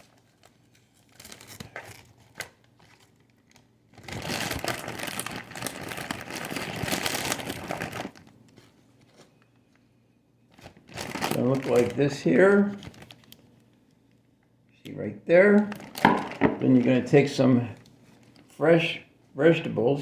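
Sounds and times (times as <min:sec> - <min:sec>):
spinach leaves crinkling and tearing: 0:00.0 - 0:09.5, 0:10.5 - 0:13.8, 0:15.5 - 0:18.7.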